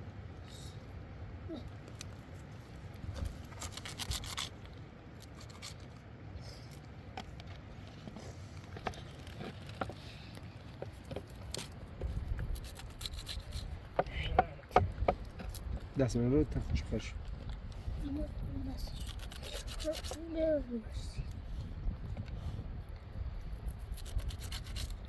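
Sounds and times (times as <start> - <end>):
handling rubbing and scraping: 1.8 - 25.0
steady low rumble: 11.6 - 19.6, 20.2 - 25.0.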